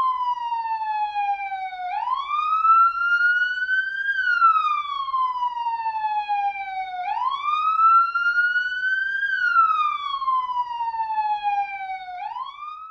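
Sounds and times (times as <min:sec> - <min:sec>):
police siren wailing: 0:00.0 - 0:12.9.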